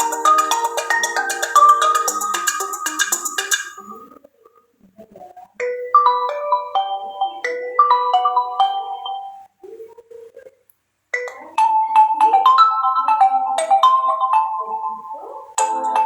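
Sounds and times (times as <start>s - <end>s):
phone alarm melody: 0.0s - 4.0s.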